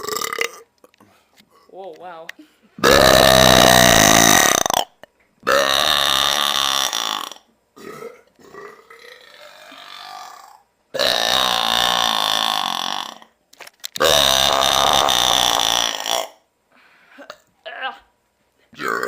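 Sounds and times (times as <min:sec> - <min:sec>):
long loud belches: 0:00.0 - 0:00.7, 0:02.8 - 0:13.4, 0:14.0 - 0:16.4, 0:18.8 - 0:19.0.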